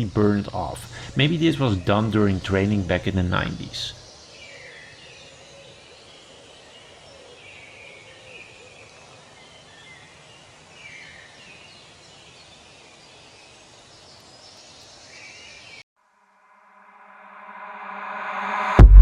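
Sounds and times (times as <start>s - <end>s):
steady hiss: 0.0s - 4.0s
birds chirping: 0.0s - 8.8s
music: 17.6s - 19.0s.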